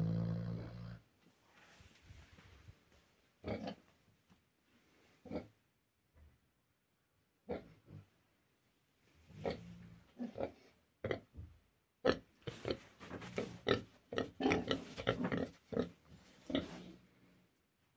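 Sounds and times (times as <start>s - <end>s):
pig grunting: 0.0s - 1.0s, 12.1s - 17.0s.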